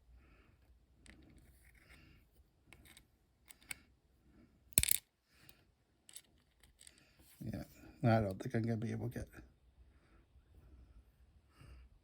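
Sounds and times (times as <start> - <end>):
small metal lock parts clinking: 4.8 - 5.1.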